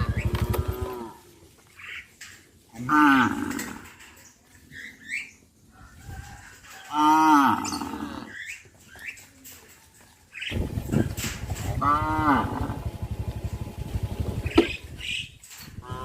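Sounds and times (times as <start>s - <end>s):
cattle mooing: 0.0s - 1.3s, 2.8s - 4.0s, 6.9s - 8.4s, 11.6s - 13.0s, 15.8s - 16.0s.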